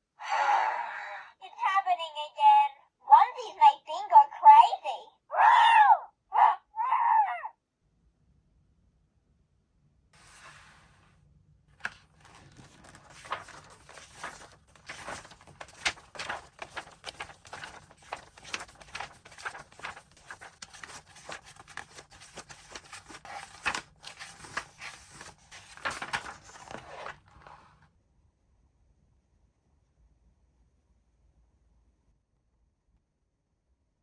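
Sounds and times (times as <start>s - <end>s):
packaging crinkling and tearing: 11.8s - 27.3s.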